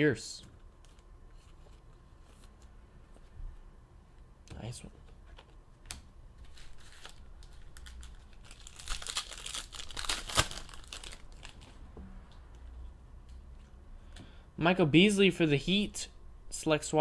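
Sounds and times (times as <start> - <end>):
plastic and foil packaging rustling: 6.4 - 11.8
packaging tearing: 6.5 - 11.6.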